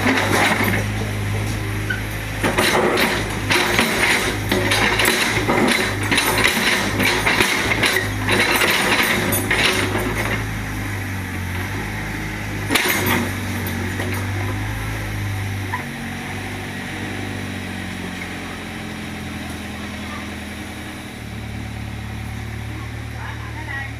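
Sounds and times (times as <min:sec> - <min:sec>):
debris clattering and knocking: 0:00.0 - 0:01.2, 0:02.2 - 0:10.6, 0:12.6 - 0:14.6
diesel engine running: 0:00.0 - 0:23.9.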